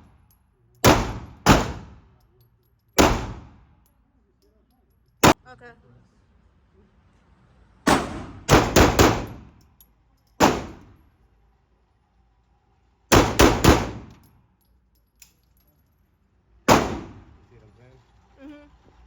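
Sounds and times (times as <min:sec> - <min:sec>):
handgun shots echoing indoors: 0:00.8 - 0:02.1, 0:02.9 - 0:03.9, 0:07.9 - 0:11.0, 0:13.1 - 0:14.3, 0:16.7 - 0:17.4.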